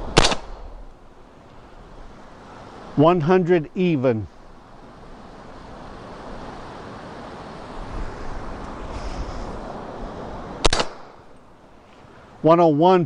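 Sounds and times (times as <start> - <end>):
wind noise on microphone: 0.0 - 0.9, 5.1 - 11.3
suppressed rifle shot: 0.1 - 0.8, 10.6 - 11.2.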